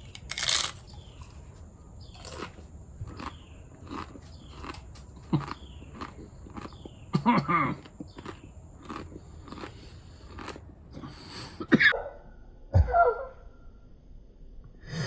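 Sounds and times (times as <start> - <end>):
crunchy chip bite and chewing: 0.0 - 11.6.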